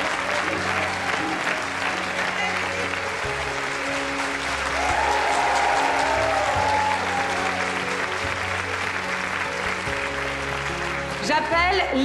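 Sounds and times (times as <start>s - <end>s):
audience applauding: 0.0s - 12.0s
background music: 0.0s - 12.0s.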